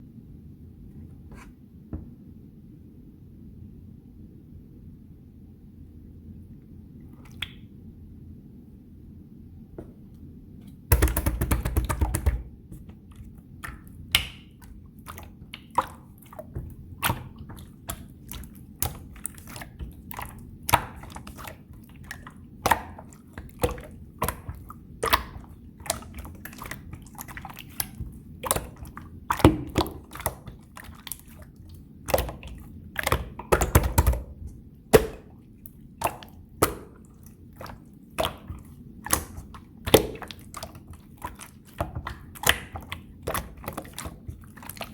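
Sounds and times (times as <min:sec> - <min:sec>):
wet slime squishing: 0:07.0 - 0:07.7, 0:09.8 - 0:44.9.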